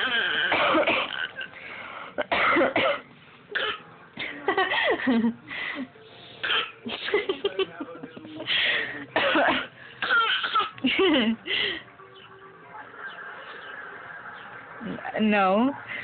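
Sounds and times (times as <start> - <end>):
baby coughing: 0.0 - 1.5, 2.2 - 3.9, 6.4 - 6.8, 9.2 - 10.8
woman coughing: 0.1 - 1.4, 2.2 - 3.0, 3.6 - 3.8, 6.4 - 6.8, 9.2 - 10.8.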